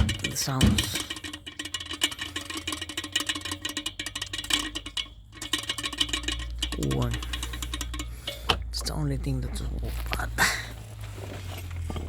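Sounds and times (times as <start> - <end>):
clutch part rattling click: 0.0 - 9.0.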